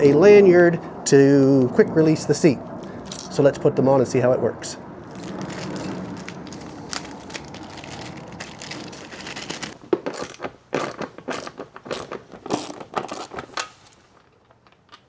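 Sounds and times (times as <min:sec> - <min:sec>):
rustling handling noise: 0:02.8 - 0:03.4, 0:05.0 - 0:14.6
small metal parts clinking: 0:03.0 - 0:03.4, 0:05.1 - 0:13.9.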